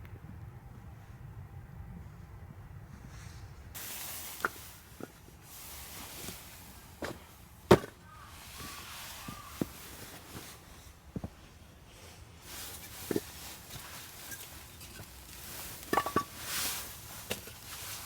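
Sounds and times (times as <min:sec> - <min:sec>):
steady hiss: 0:03.7 - 0:07.4.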